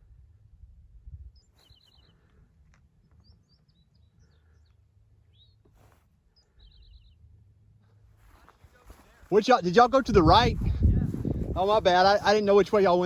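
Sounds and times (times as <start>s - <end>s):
songbird singing: 1.2s - 9.9s, 10.5s - 13.0s
low rumble: 10.0s - 12.4s.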